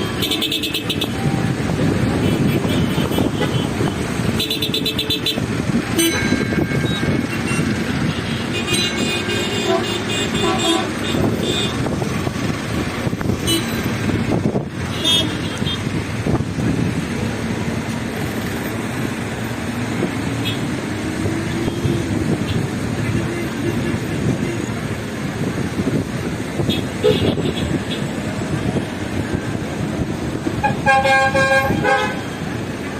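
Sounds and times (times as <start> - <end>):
cars passing: 0.0 - 32.9
car horn toots: 2.2 - 11.9, 14.9 - 15.8, 30.6 - 32.4.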